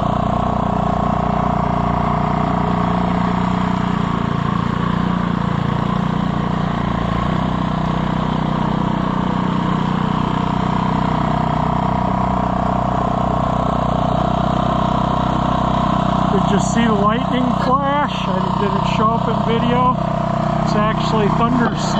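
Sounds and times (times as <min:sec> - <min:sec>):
snowblower engine running: 0:00.0 - 0:21.9.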